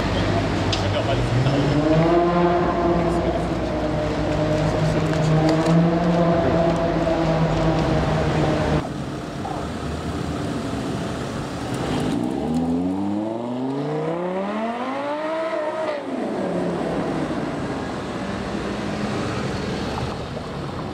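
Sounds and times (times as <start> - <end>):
car engine revving: 0.1 - 8.9, 11.7 - 19.3.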